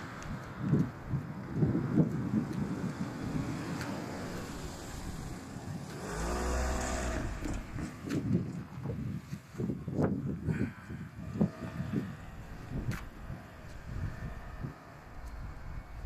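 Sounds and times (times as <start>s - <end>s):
wind buffeting microphone: 0.0s - 16.0s
vehicle driving past: 2.8s - 8.2s, 11.2s - 16.0s.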